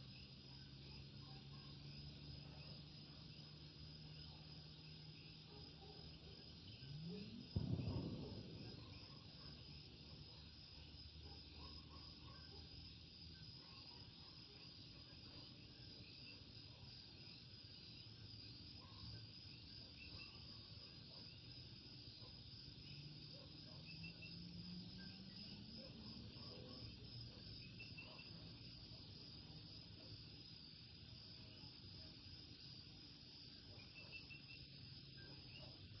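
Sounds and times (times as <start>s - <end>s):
frogs chirping: 22.9s - 36.0s.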